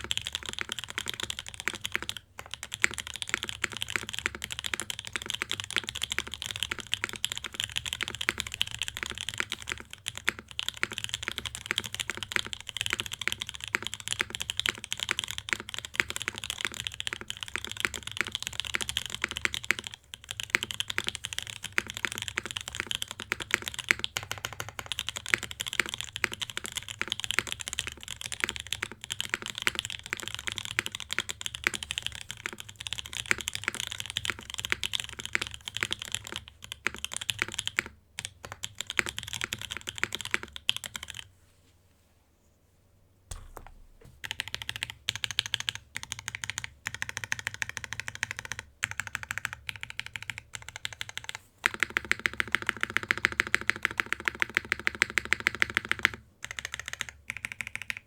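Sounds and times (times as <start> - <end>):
fast typing on mechanical keyboard: 0.0 - 41.3, 43.3 - 58.0.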